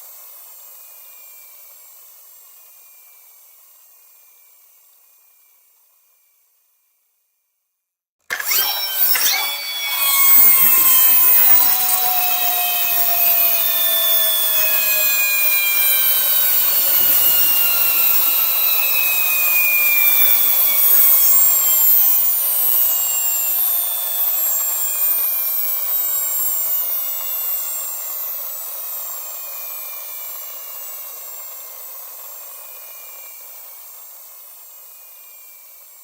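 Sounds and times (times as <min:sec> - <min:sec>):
toy car motor whirring: 0:08.3 - 0:35.5.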